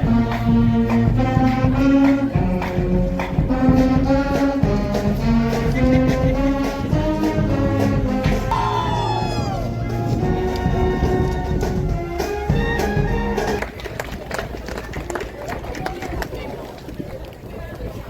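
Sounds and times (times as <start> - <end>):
trombone slide: 0.0 - 13.6
brass band music: 0.0 - 13.8
drum beats: 0.0 - 13.8.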